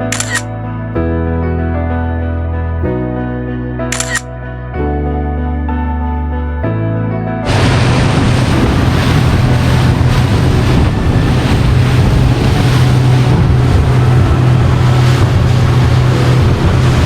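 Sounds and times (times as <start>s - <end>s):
background music: 0.0s - 17.0s
motorboat engine humming: 7.5s - 17.0s
water rushing past hull: 7.5s - 17.0s
wind buffeting microphone: 7.5s - 17.0s.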